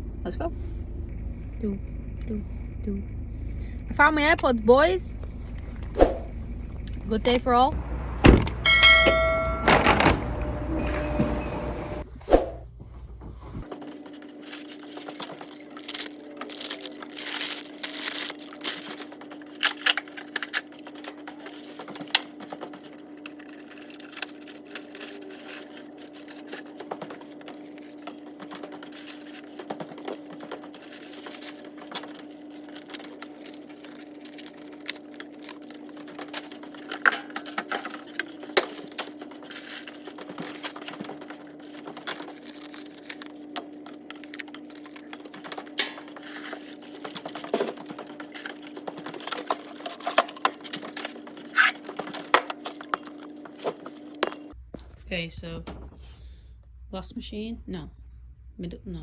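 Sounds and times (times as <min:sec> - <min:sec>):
steady low hum: 0:00.0 - 0:59.0
packaging crinkling: 0:13.6 - 0:54.6
items clicking and knocking: 0:13.6 - 0:56.0.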